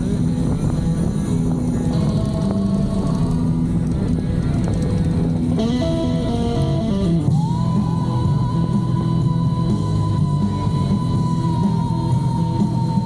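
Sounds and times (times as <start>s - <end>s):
low musical accompaniment: 0.0s - 13.0s
descending run of notes: 1.8s - 9.2s.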